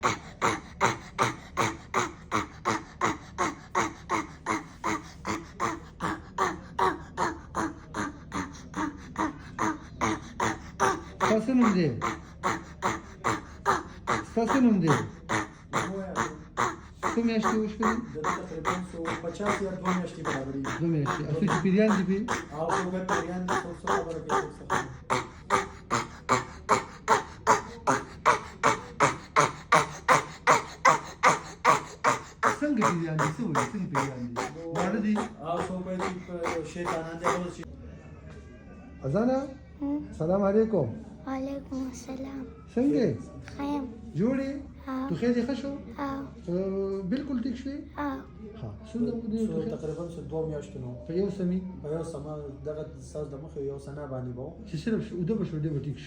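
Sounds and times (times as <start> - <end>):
child coughing repeatedly: 0.0 - 37.6.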